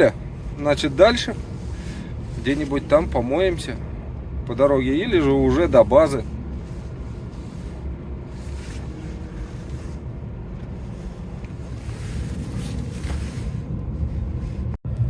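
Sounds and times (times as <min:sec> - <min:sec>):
truck engine and road rumble: 0:00.0 - 0:15.0.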